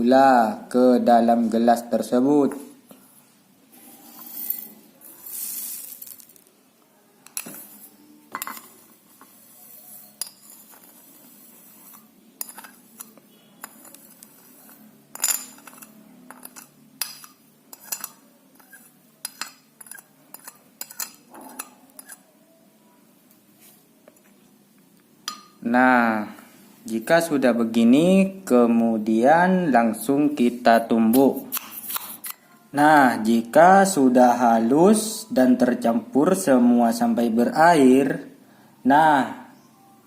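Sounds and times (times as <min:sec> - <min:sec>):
spoon clinking against glass: 0:12.4 - 0:22.2.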